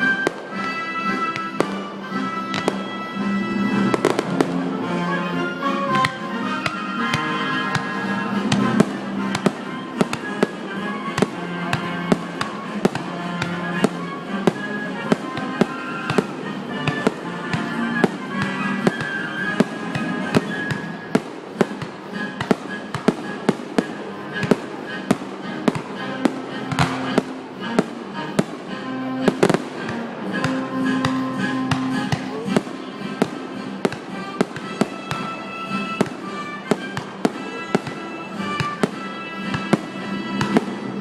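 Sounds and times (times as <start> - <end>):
fireworks bangs: 0.0 - 41.0
music playing: 0.0 - 41.0.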